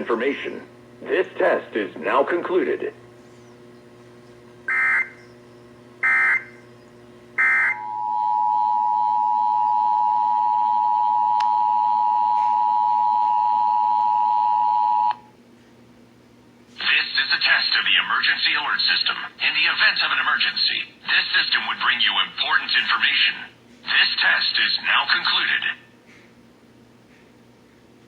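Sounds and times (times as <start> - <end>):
two-tone attention signal: 4.7 - 5.2, 6.0 - 6.6, 7.4 - 15.1.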